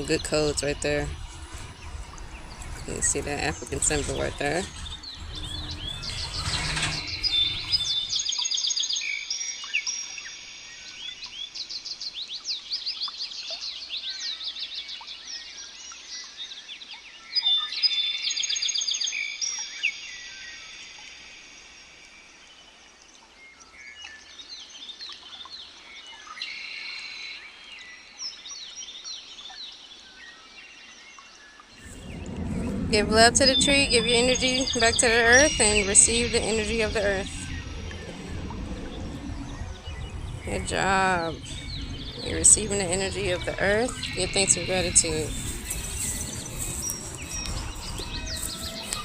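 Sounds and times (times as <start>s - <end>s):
low rumbling noise: 0.0s - 8.2s, 31.7s - 49.0s
songbirds chirping and trilling: 0.0s - 9.1s, 31.2s - 49.0s.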